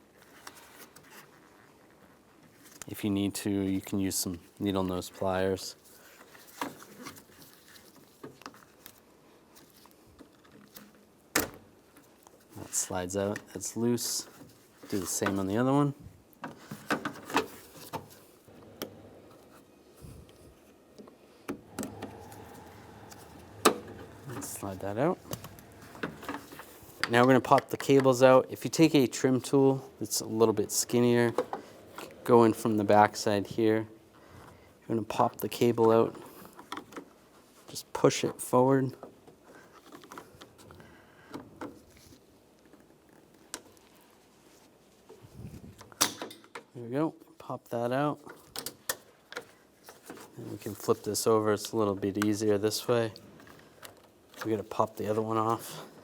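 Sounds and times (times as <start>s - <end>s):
faint rubbing: 21.6s - 27.1s.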